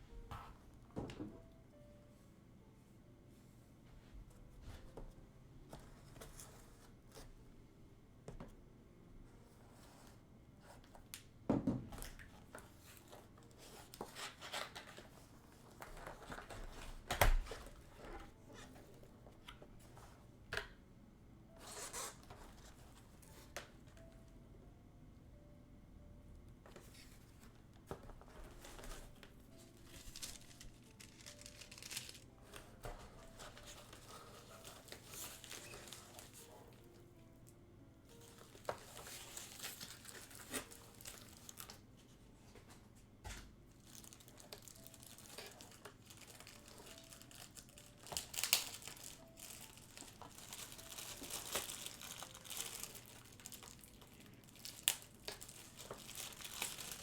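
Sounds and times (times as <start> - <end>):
packaging crinkling and rustling: 12.0 - 18.9, 26.8 - 37.0, 38.1 - 41.8, 43.8 - 57.0.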